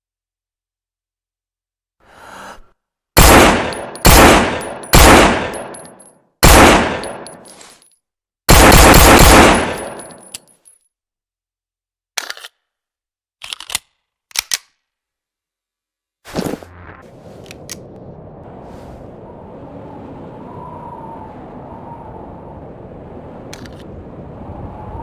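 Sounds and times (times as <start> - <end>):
pistol shots with echo: 3.2 - 5.8, 6.4 - 7.3, 8.5 - 10.1
sharp mechanical clicks: 13.4 - 14.8.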